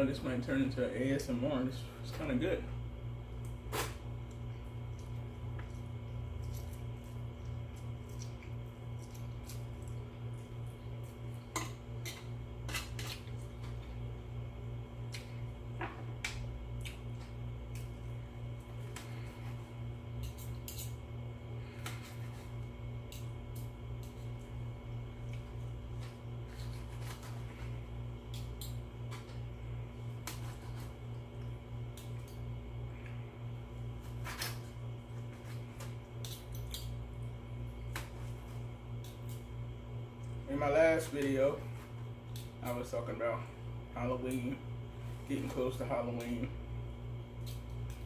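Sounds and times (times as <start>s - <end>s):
low steady hum: 0.0s - 48.0s
person eating and chewing: 3.3s - 14.0s, 16.2s - 28.8s.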